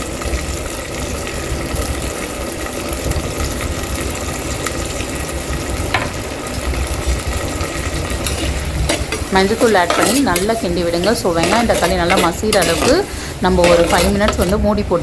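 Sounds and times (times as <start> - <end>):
food sizzling in hot oil: 0.0 - 15.0
stirring spoon taps: 8.3 - 14.6.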